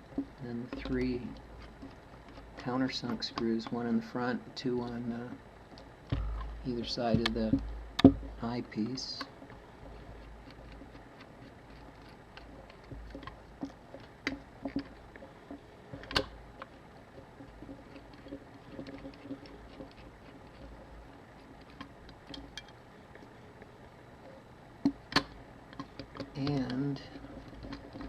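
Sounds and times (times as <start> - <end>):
screwdriver ticks and scrapes on metal: 0.0 - 4.0, 4.8 - 22.8, 24.8 - 28.0.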